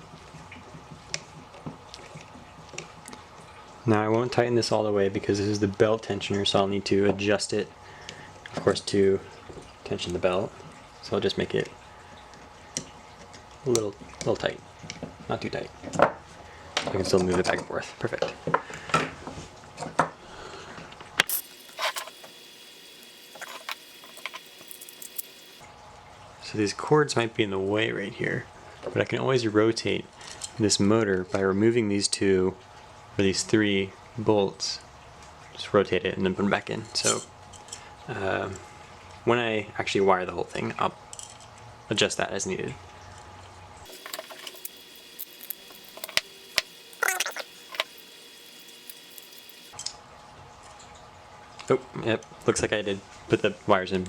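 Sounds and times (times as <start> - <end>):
small parts clicking and tapping: 21.2 - 25.6, 43.9 - 49.9.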